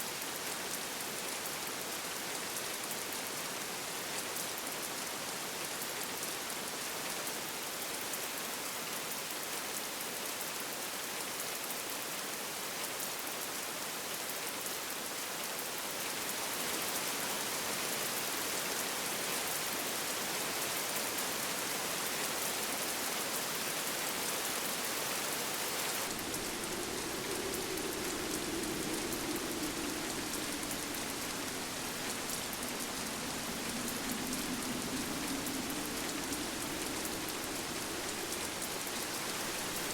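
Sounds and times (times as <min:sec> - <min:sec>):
steady rain hiss: 0:00.0 - 0:39.9
howling wind: 0:16.1 - 0:39.9.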